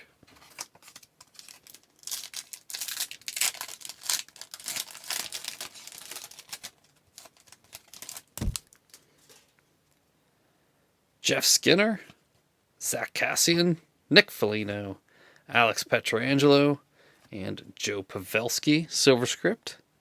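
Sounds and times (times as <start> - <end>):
foil wrapper crinkling and tearing: 0.4 - 9.5
soft thump: 8.4 - 8.6.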